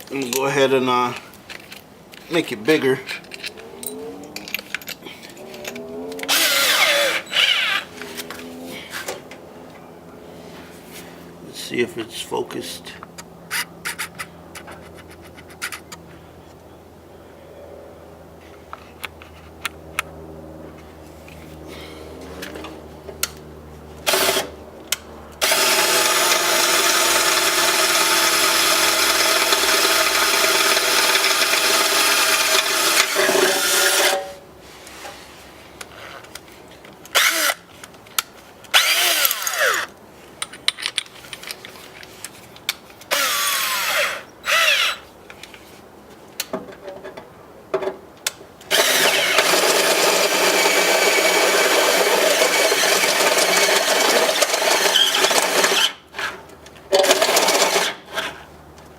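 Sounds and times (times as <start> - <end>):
power drill drilling metal: 6.3 - 7.9, 24.1 - 24.5, 25.4 - 34.3, 37.1 - 37.6, 38.8 - 39.9, 43.1 - 45.0, 48.7 - 56.0, 57.0 - 58.3.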